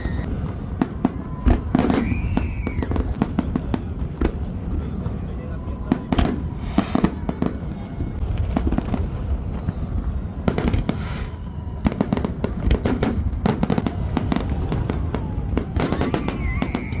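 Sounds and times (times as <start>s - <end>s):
fireworks cracking and banging: 0.0s - 17.0s.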